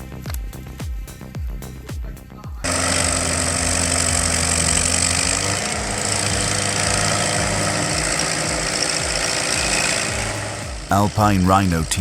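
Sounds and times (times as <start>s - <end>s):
heavy machine engine humming: 2.6s - 12.0s.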